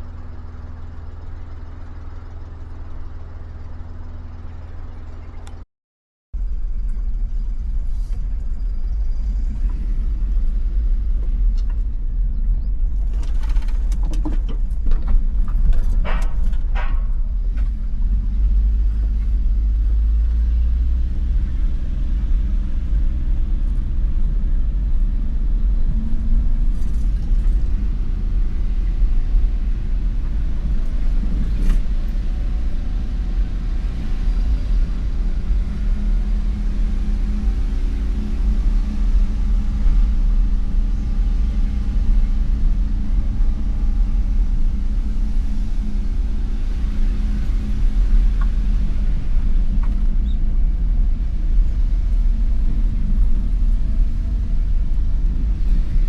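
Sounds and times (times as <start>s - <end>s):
moving car rumble: 0.0s - 5.6s, 6.4s - 56.0s
clicks and rustles: 13.0s - 17.8s.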